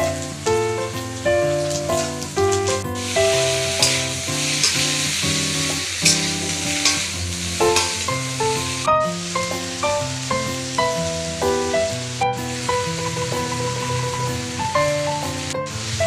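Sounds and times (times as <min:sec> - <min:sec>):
instrumental background music: 0:00.0 - 0:16.0
vegetables sizzling in oil: 0:00.0 - 0:16.0
stirring in a pan: 0:03.0 - 0:09.3.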